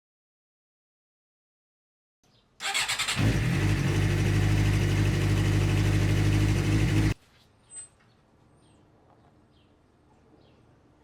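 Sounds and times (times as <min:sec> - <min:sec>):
motorcycle engine starting and running: 0:02.6 - 0:07.2.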